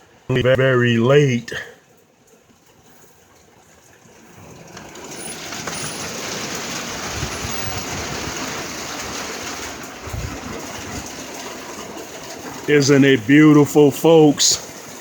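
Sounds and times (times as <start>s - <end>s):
heavy rain pouring: 4.0s - 15.0s.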